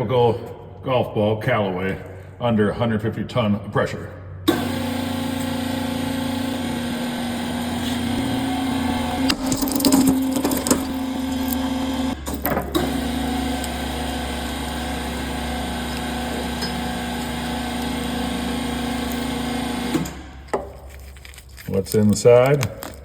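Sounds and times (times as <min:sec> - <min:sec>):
hydraulic press humming: 0:04.5 - 0:20.5.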